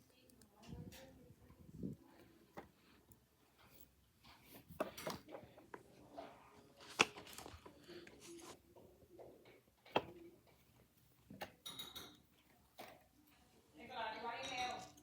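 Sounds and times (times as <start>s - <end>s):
rustling: 6.1s - 8.6s.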